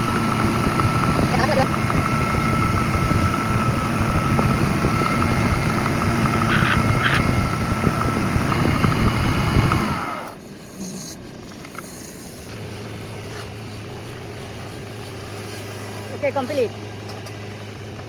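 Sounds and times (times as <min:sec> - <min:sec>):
machine motor rumbling and whining: 0:00.0 - 0:18.0
short noise bursts: 0:06.2 - 0:08.0.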